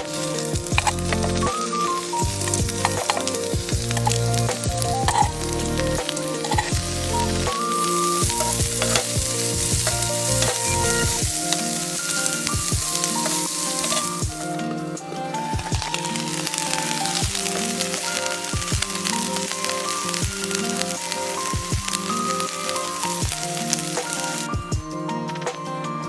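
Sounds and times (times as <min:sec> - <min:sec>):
meat sizzling: 0:00.0 - 0:14.7, 0:15.3 - 0:24.5
background music with bass: 0:00.0 - 0:26.0.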